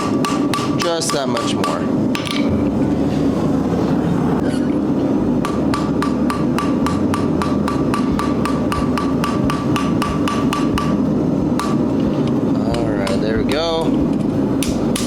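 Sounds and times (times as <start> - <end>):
steady low noise: 0.0 - 15.0
hammer blows on metal: 5.4 - 15.0.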